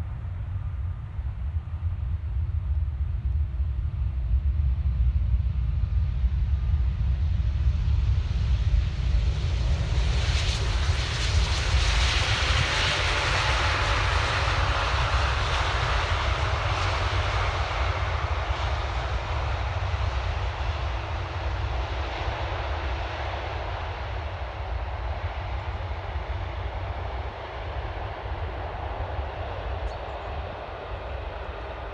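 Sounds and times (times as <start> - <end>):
jet engines roaring: 8.1 - 31.9.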